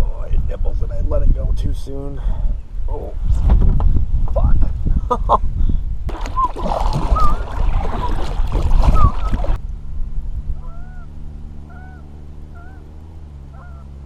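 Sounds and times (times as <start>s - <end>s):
wind buffeting microphone: 0.0s - 12.0s
steady low hum: 5.8s - 14.0s
geese honking: 11.7s - 12.9s, 13.5s - 14.0s.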